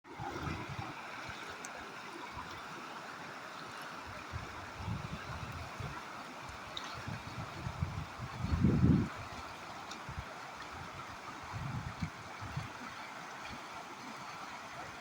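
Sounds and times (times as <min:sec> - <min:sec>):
stream water rushing: 0:00.1 - 0:15.0.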